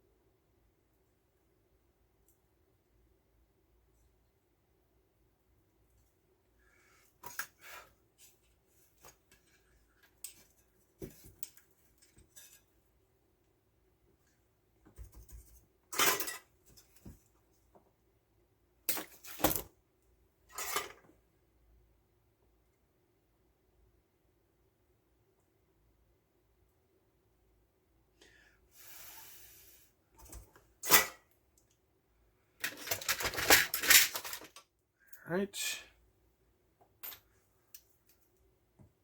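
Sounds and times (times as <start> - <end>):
tools clattering: 15.3 - 17.1, 20.5 - 21.0, 32.6 - 34.6.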